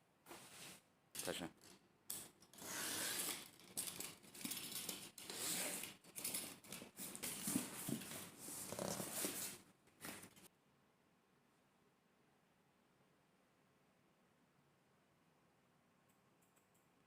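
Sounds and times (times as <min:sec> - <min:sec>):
objects rustling and clattering: 0:00.3 - 0:10.5.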